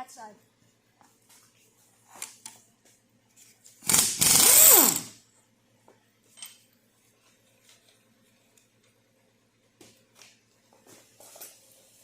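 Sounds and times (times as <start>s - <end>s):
power tool motor whine: 3.9s - 5.1s.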